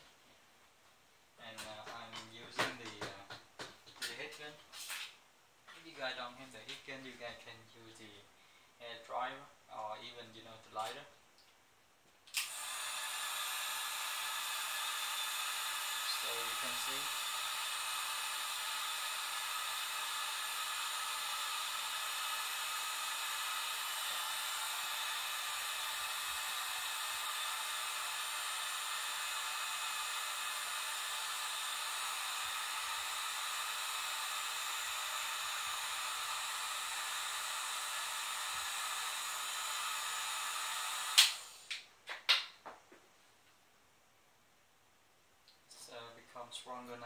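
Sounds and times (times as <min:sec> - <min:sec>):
heat gun blowing: 0:12.3 - 0:41.9.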